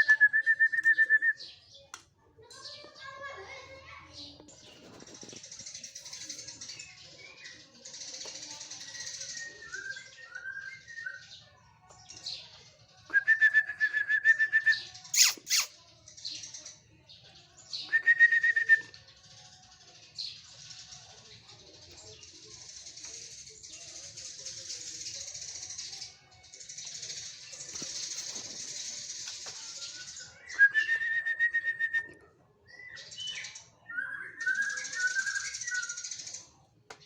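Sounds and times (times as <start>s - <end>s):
songbird rattling trills: 15.1s - 15.7s, 26.6s - 30.3s.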